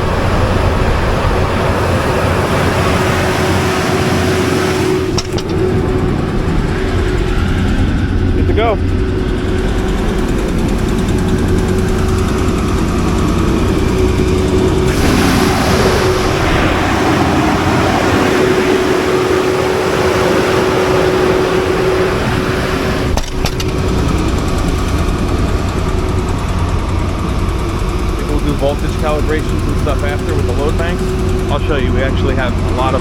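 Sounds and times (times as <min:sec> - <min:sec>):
generator humming: 0:00.0 - 0:33.0
loud rushing noise: 0:01.3 - 0:07.2, 0:13.6 - 0:23.2.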